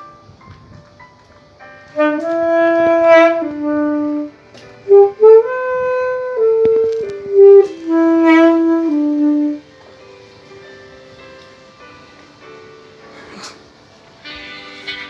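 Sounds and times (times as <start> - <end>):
saxophone slow melody: 1.8 - 9.9, 13.0 - 15.0.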